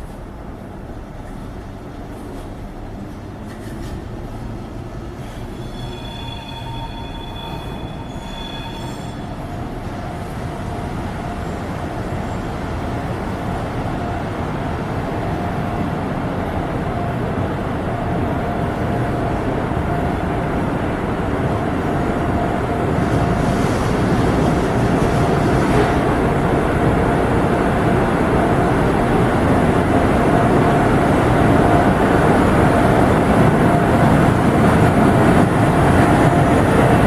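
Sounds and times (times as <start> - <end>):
train wheel and track rumble: 0.0 - 37.0
high wheel squeal: 5.4 - 9.6.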